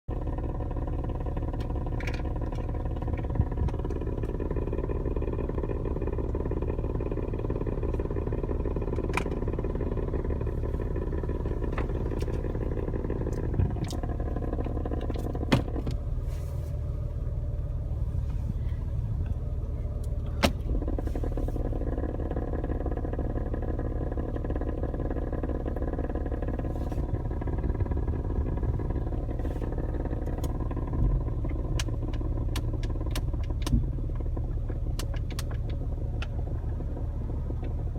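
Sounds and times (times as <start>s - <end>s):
car engine idling: 0.0s - 37.9s
fluttering behind dashboard: 0.1s - 37.9s.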